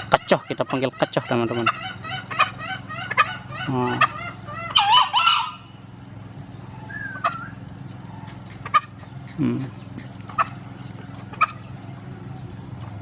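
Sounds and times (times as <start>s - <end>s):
junglefowl quick call notes: 0.0s - 5.7s
junglefowl harsh crow: 0.0s - 5.8s, 6.7s - 11.7s
steady low hum: 0.0s - 13.0s.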